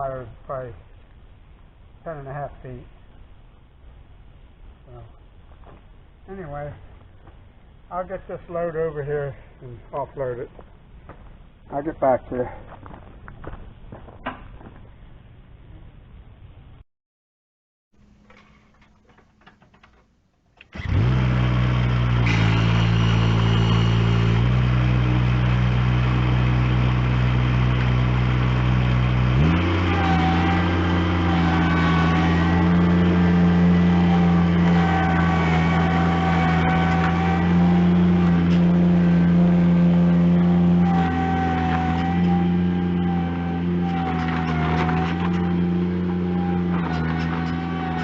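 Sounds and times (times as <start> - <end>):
engine running: 20.7 - 48.0.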